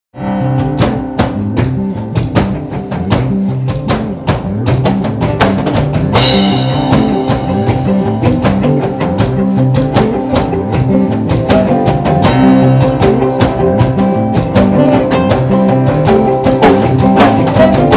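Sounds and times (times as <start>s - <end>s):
band music: 0.2s - 17.9s
drum kit beat: 0.2s - 17.9s.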